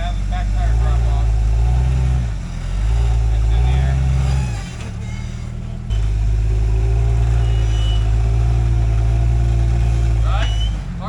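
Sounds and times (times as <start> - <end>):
off-road vehicle engine under load: 0.0 - 11.0.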